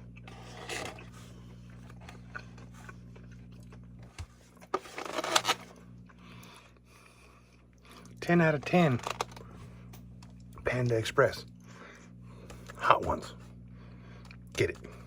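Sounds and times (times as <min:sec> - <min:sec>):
crunching and scraping: 0:00.0 - 0:06.7
low hum: 0:00.0 - 0:15.0.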